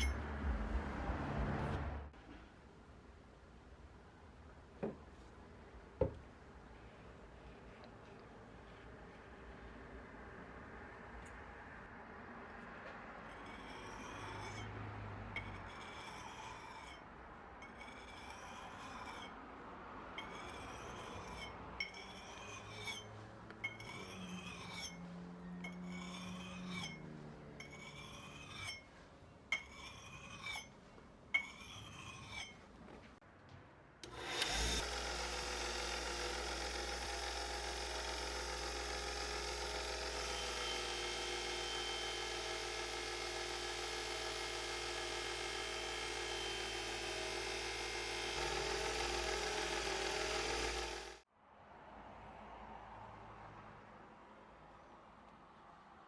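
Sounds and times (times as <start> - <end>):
hand file rasping on steel: 13.3 - 19.4, 20.2 - 30.8, 31.4 - 32.6, 35.6 - 51.2
power tool motor whirring: 34.0 - 51.2.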